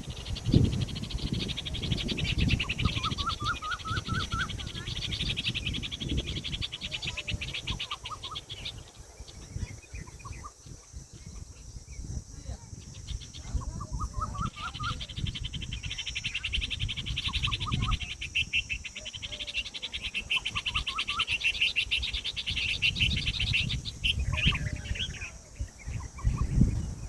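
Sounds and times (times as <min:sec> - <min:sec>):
fast insect-like trill: 0:00.0 - 0:27.0
quick chirping bird calls: 0:00.0 - 0:27.0.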